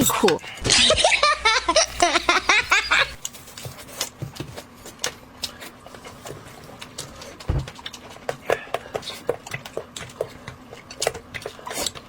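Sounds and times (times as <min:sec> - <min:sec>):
chewing and mouth smacks: 0:03.2 - 0:12.0.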